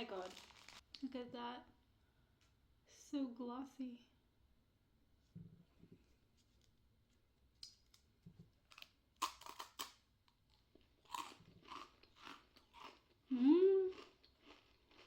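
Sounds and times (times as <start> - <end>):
crunching cookie: 0.0 - 0.8, 7.9 - 13.3, 13.9 - 15.0.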